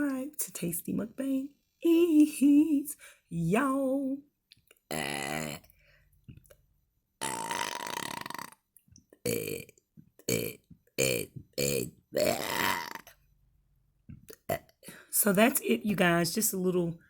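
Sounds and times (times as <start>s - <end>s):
woman burping: 4.9s - 5.7s, 7.2s - 8.6s, 9.2s - 9.7s, 10.3s - 13.2s, 14.3s - 14.8s.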